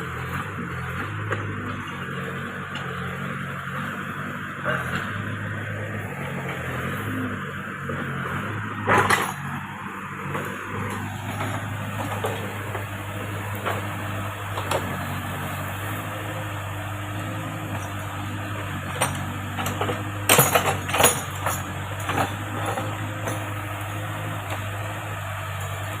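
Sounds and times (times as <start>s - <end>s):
diesel engine running: 0.0s - 26.0s
metallic clanks and knocks: 8.8s - 9.7s, 18.8s - 23.5s.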